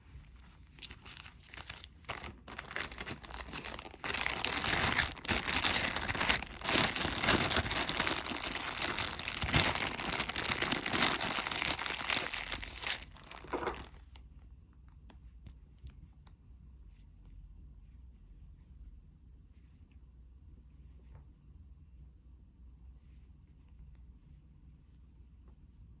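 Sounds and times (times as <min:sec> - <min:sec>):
crinkling and rustling of items: 0:00.0 - 0:15.9.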